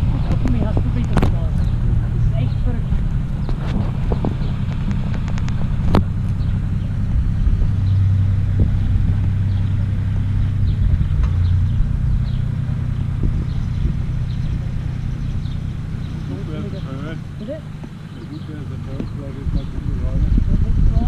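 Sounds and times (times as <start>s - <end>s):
engine rumbling: 0.0s - 21.0s
sharp clicks: 4.2s - 6.4s.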